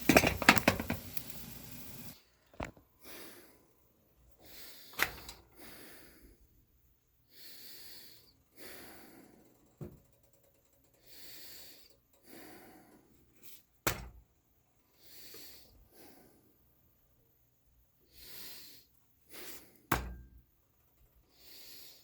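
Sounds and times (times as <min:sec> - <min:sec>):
person breathing heavily: 0:03.0 - 0:09.7, 0:11.0 - 0:13.7, 0:14.9 - 0:16.6, 0:18.1 - 0:19.9, 0:21.3 - 0:22.0.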